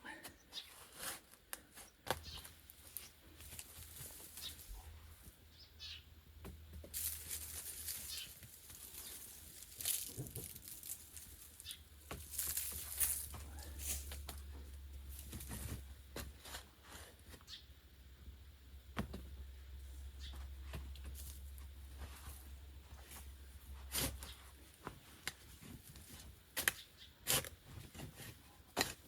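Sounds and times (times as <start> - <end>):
rustling: 0.6 - 5.4, 6.8 - 17.3.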